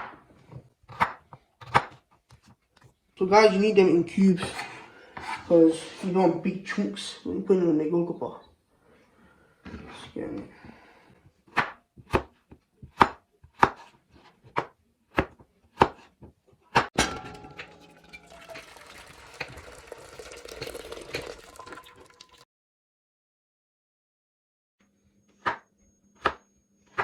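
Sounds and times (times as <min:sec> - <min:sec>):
knife chopping on cutting board: 0:00.9 - 0:02.0, 0:11.5 - 0:16.9
clattering and scraping: 0:17.0 - 0:19.5.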